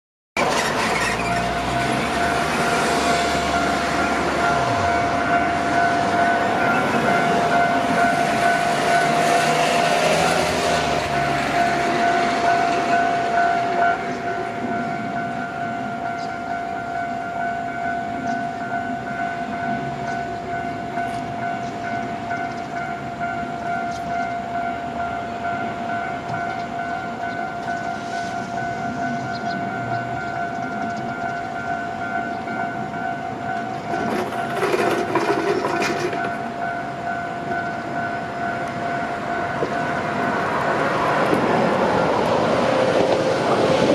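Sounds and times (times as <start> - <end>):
electric train passing: 0.4 - 43.9
level crossing warning bell: 0.4 - 43.9.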